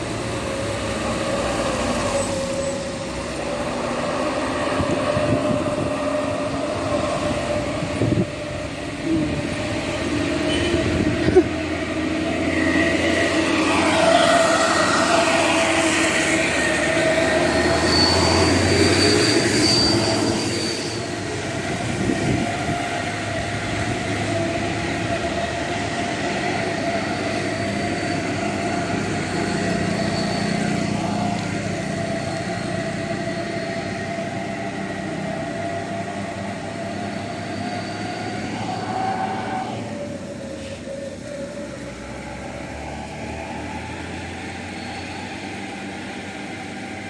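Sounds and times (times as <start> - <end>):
heavy vehicle engine running: 0.0 - 47.0
high thin whine: 36.1 - 40.9.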